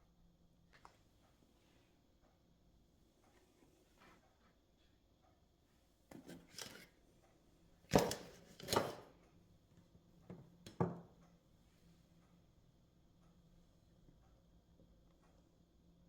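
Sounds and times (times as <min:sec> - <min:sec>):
kitchen knocks and scrapes: 0:06.1 - 0:06.9, 0:07.9 - 0:09.1.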